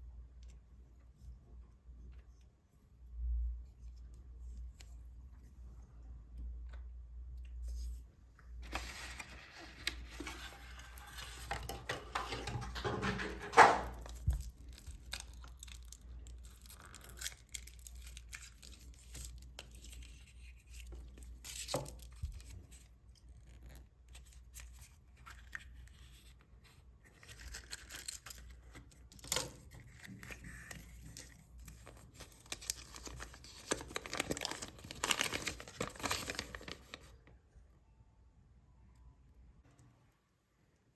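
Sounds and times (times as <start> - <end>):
foil wrappers tearing and crinkling: 8.6 - 19.4, 31.8 - 37.1.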